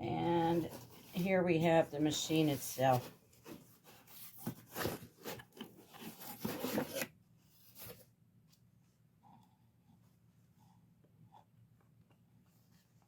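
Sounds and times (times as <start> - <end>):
packaging rustling and scraping: 0.4 - 8.1.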